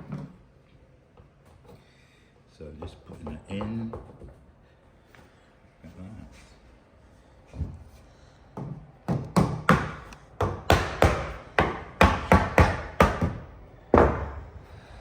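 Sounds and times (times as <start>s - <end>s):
sharp wooden knocks: 9.1s - 14.4s.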